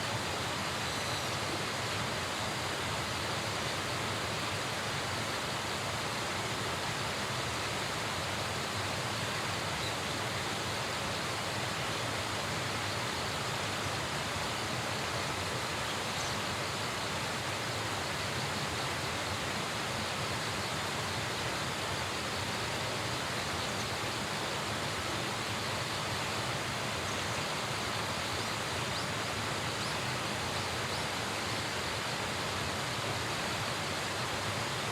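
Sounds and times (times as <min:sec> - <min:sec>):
river rushing: 0:00.0 - 0:34.9.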